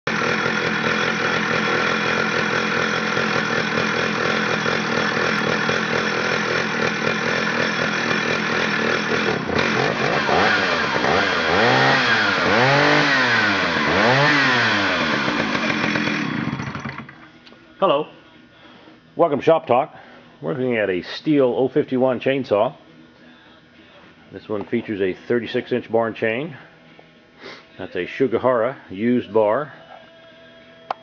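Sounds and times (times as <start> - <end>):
chainsaw running and revving: 0.1 - 17.3.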